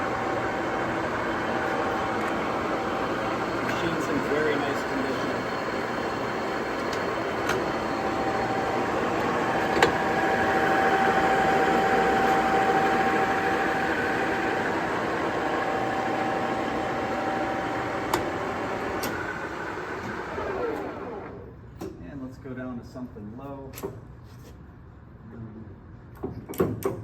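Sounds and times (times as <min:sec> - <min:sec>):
lathe humming with whine: 0:00.0 - 0:21.6.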